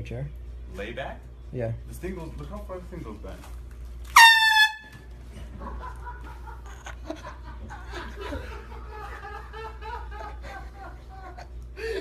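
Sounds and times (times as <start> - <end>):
air horn blast: 4.1 - 5.1
laughter: 5.4 - 12.0.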